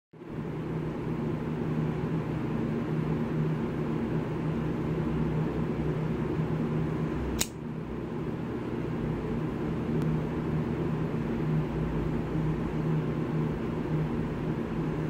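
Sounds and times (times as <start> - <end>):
low machine hum: 0.2 - 15.0
sharp click: 7.4 - 7.6.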